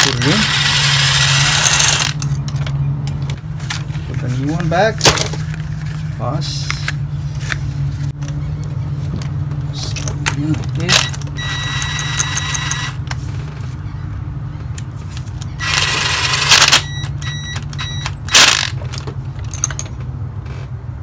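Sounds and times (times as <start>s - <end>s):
metal tools scraping and clinking: 9.0s - 13.7s, 14.9s - 20.1s.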